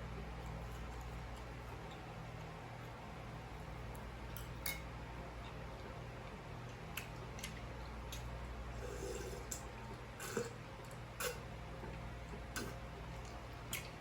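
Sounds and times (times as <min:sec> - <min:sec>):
low steady hum: 0:00.0 - 0:14.0
chewing with mouth smacks: 0:00.4 - 0:03.0, 0:05.4 - 0:08.4, 0:09.5 - 0:14.0.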